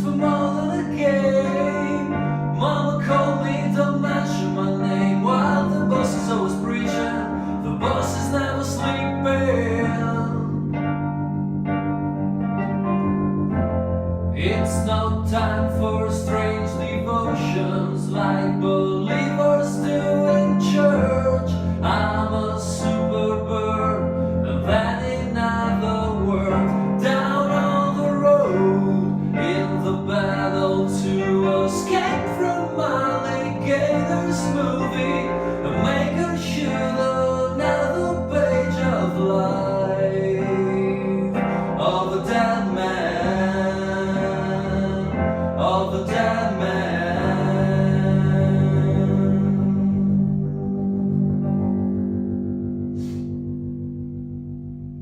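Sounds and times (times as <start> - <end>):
sustained low notes: 0.0 - 55.0.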